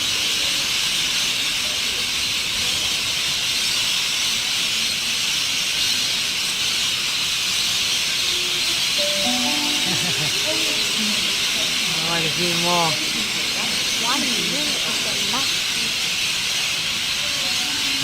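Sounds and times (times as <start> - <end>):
large flock of birds calling: 0.0 - 18.0.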